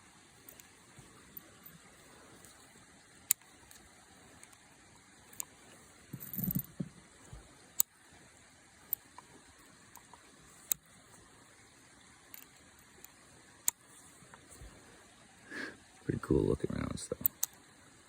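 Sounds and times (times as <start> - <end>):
faint cylinder ticks: 0.4 - 2.6, 3.2 - 4.7, 5.3 - 8.0, 8.8 - 11.0, 12.2 - 14.5, 17.1 - 17.7.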